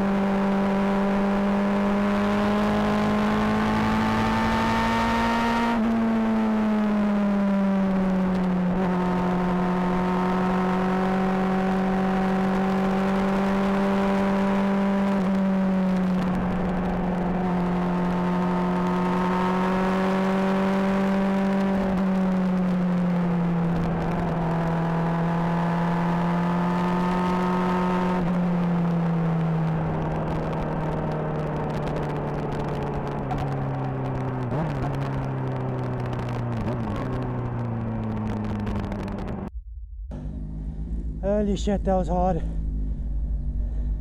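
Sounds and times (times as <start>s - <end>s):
motorcycle engine running: 28.2s - 44.0s.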